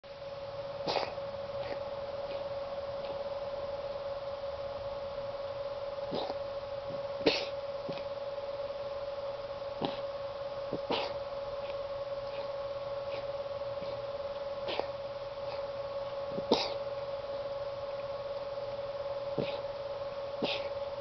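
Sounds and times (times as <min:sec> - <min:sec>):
steady hum: 0:00.0 - 0:21.0
pet coughing and hacking: 0:00.8 - 0:03.2, 0:06.0 - 0:06.4, 0:07.2 - 0:08.2, 0:09.8 - 0:16.9, 0:19.3 - 0:19.8, 0:20.4 - 0:20.9.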